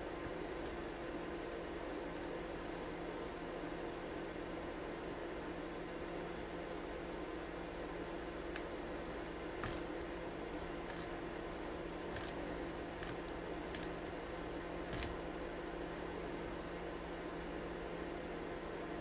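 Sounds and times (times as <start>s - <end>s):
background hum: 0.0s - 19.0s
lock pick metallic clicks: 9.6s - 10.2s, 10.9s - 12.4s, 14.9s - 15.2s.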